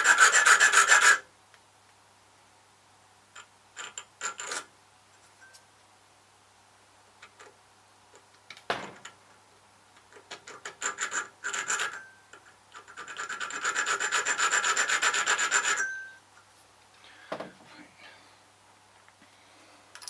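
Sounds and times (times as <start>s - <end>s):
file rasping on metal: 0.0s - 1.2s, 10.5s - 12.0s, 12.8s - 15.9s.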